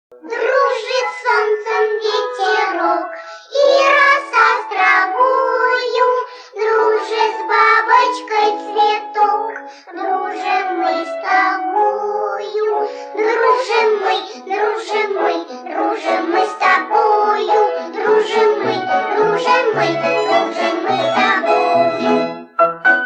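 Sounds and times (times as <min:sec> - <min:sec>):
song with high singing voice: 0:00.2 - 0:23.0.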